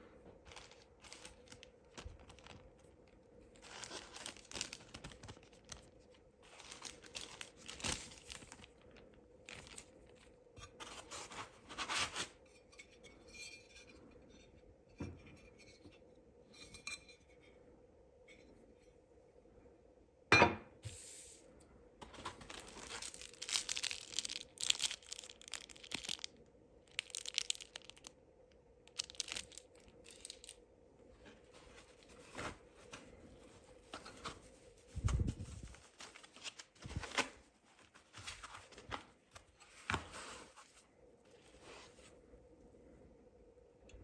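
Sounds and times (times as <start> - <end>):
wrapping tearing and crinkling: 0.4 - 12.3, 22.0 - 28.2, 28.8 - 30.6, 31.5 - 42.1.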